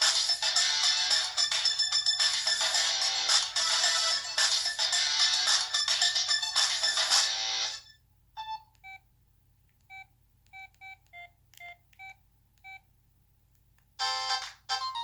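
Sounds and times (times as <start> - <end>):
music ringtone: 0.0 - 8.6, 14.0 - 15.0
ringtone melody: 0.0 - 8.6, 14.0 - 15.0.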